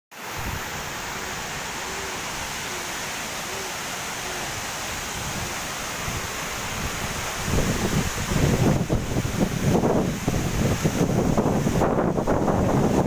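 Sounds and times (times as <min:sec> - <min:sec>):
waterfall rushing: 0:00.1 - 0:13.0
wind rumble on microphone: 0:00.2 - 0:01.1, 0:04.5 - 0:13.0.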